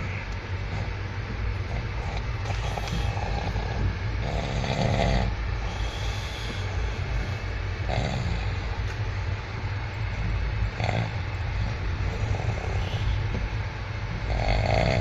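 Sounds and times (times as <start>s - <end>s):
train carriage rumble: 0.0s - 15.0s
man snoring: 1.7s - 8.8s, 10.7s - 11.4s, 12.0s - 13.3s, 14.2s - 15.0s.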